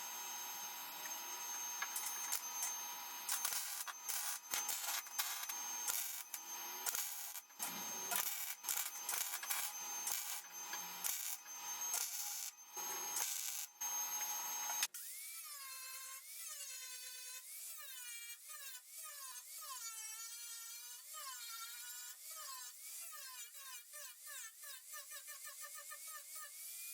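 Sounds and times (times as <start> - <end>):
welding crackle: 0.0 - 14.9
grinding tool whining on metal: 0.0 - 15.0.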